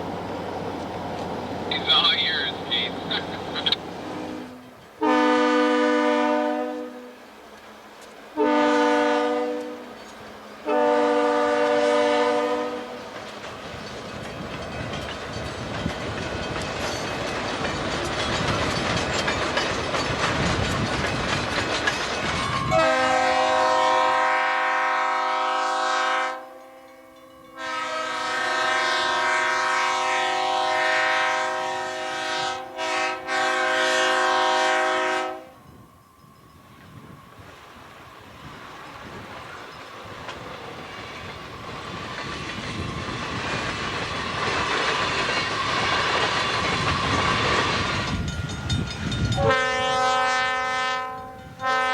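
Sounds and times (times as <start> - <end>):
train passing with rumble: 0.0 - 51.9
train air horn blasts: 4.0 - 7.3, 8.4 - 10.0, 10.6 - 13.2, 22.6 - 35.7, 49.3 - 51.9
wheel clatter over rail joints: 9.9 - 10.6, 13.0 - 22.8, 36.7 - 49.4.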